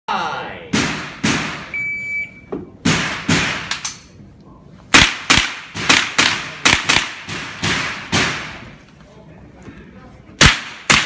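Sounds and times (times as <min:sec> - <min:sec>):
shot timer beep: 0:01.7 - 0:02.5
gunshots: 0:04.9 - 0:08.6, 0:10.4 - 0:11.0.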